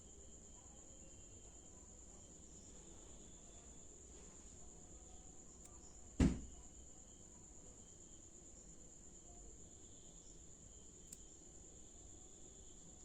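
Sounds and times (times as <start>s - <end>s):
sharp thump: 6.2s - 6.5s
faint click: 11.0s - 11.3s.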